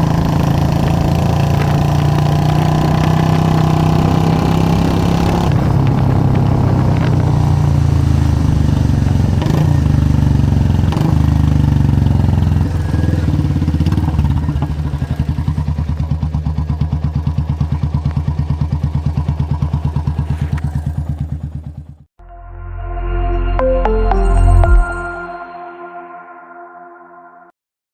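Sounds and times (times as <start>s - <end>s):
motorcycle engine revving and idling: 0.0s - 22.2s.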